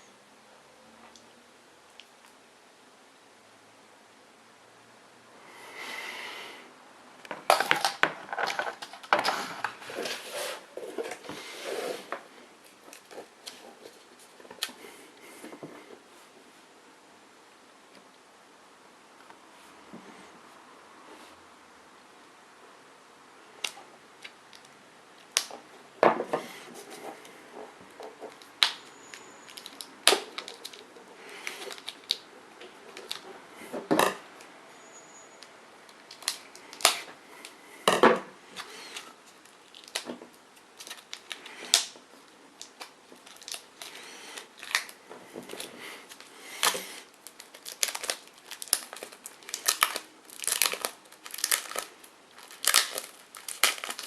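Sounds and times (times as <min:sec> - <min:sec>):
packaging crinkling and tearing: 0:07.5 - 0:11.4, 0:26.8 - 0:33.3, 0:35.9 - 0:37.6, 0:38.6 - 0:54.0.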